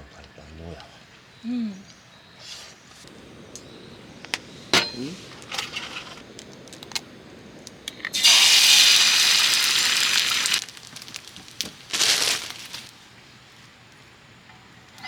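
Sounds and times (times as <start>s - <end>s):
loud hiss: 3.0s - 13.4s.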